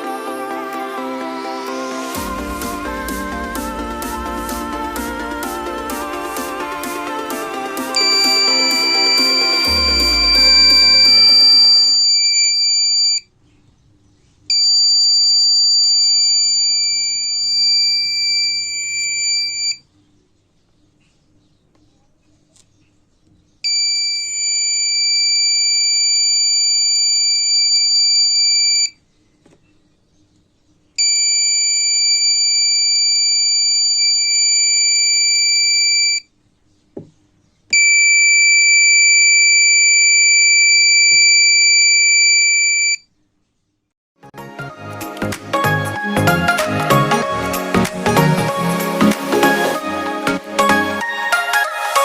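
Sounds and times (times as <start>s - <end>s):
high-pitched alarm buzzer beeps: 31.0s - 36.2s.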